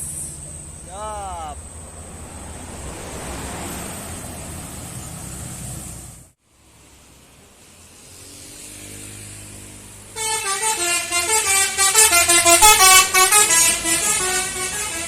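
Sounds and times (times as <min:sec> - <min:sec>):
bus engine: 0:00.0 - 0:15.0
musical air horn melody: 0:10.2 - 0:15.0.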